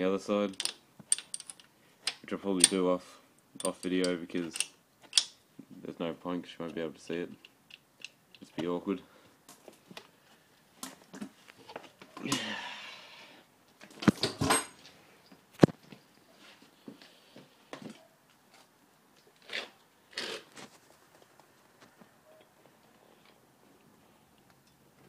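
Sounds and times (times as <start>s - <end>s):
hand tools clicking and knocking: 0.4s - 2.9s, 3.6s - 5.4s
scraping rustle: 20.2s - 22.1s.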